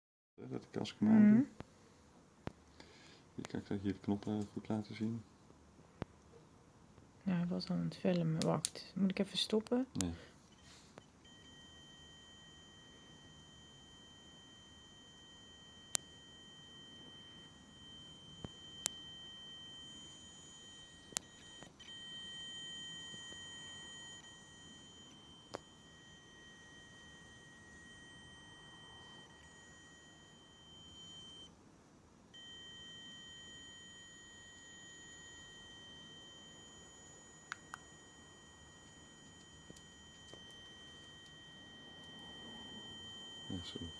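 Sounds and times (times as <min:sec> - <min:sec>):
faint high-pitched tone: 0:10.0 - 0:31.5, 0:32.3 - 0:43.9.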